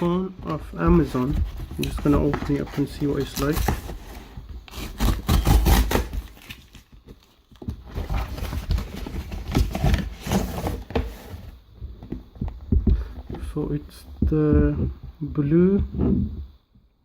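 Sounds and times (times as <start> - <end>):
packaging rustling and scraping: 0.0 - 11.6.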